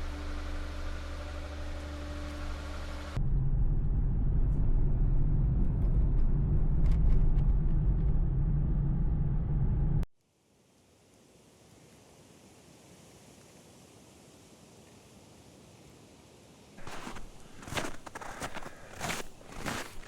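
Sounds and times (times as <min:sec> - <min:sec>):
engine droning: 0:00.0 - 0:10.0, 0:16.8 - 0:20.0.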